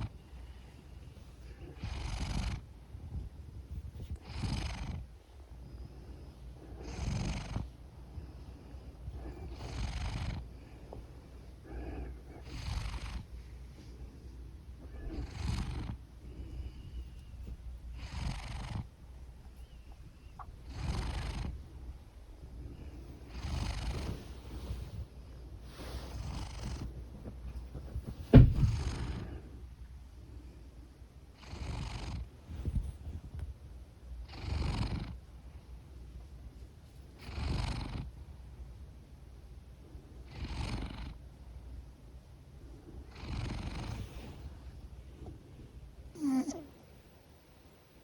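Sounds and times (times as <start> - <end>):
cat purring: 0.0 - 29.6, 31.3 - 33.6, 34.2 - 35.6, 37.2 - 38.4, 40.0 - 41.6, 42.5 - 47.0
cat snoring: 1.4 - 2.7, 4.0 - 5.1, 6.6 - 7.7, 9.1 - 10.8, 11.6 - 13.3, 14.9 - 17.2, 17.9 - 19.0, 20.4 - 21.7, 22.7 - 25.0, 25.7 - 26.9, 28.6 - 29.5, 31.4 - 32.9, 34.2 - 35.2, 37.2 - 38.2, 40.2 - 41.2, 43.0 - 44.5, 46.2 - 46.7
sharp thump: 28.3 - 28.9.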